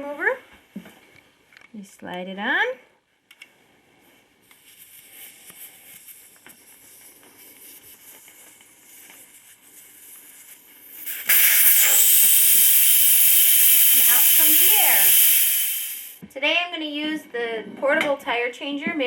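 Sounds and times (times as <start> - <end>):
air hissing out of tire: 4.6 - 16.2.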